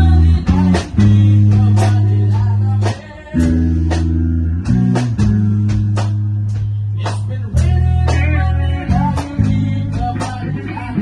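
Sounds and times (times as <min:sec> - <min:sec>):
drum beat: 0:00.0 - 0:11.0
guitar: 0:00.0 - 0:11.0
loud held bass notes: 0:00.0 - 0:11.0.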